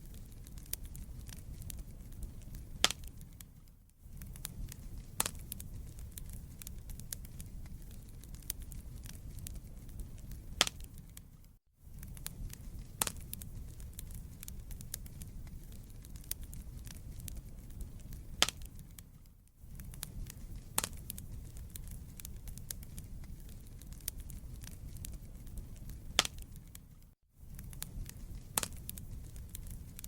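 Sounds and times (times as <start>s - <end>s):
fire pops and snaps: 0.0s - 30.0s
wood fire crackling: 0.0s - 30.0s.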